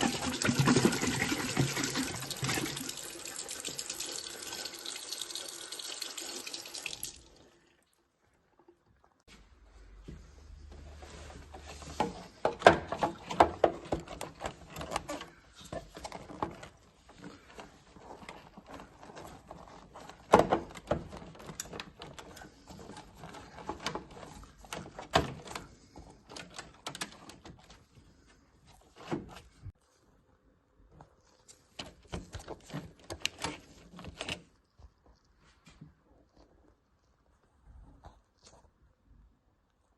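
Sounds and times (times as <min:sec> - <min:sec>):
plastic knocks and rattles: 0:11.8 - 0:27.8.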